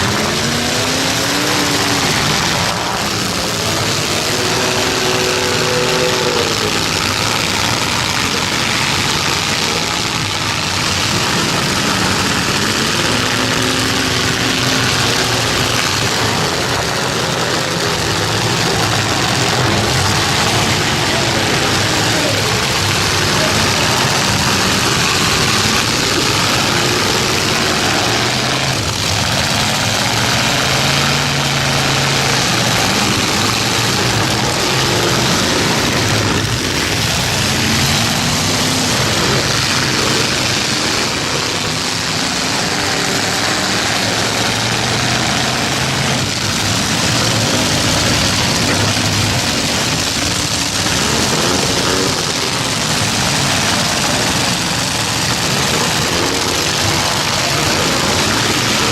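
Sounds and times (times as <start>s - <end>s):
truck engines revving: 0.0s - 58.9s.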